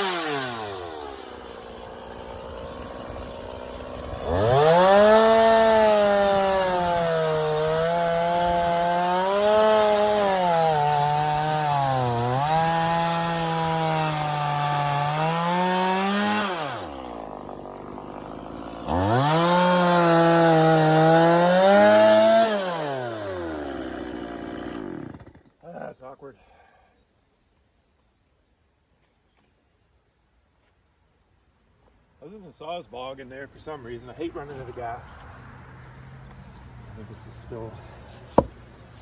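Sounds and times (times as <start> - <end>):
chainsaw cutting log: 0.0 - 25.6, 38.1 - 39.0.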